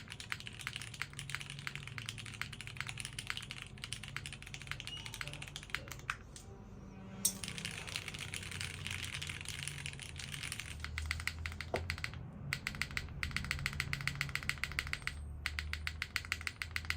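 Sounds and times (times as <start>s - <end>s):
mechanical keyboard typing: 0.0s - 6.3s, 7.4s - 16.9s.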